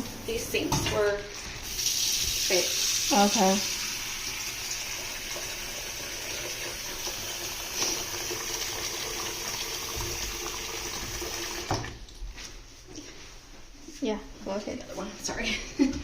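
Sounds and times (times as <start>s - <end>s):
faucet running into sink: 0.8s - 12.0s
faucet shut off knock: 6.4s - 12.0s.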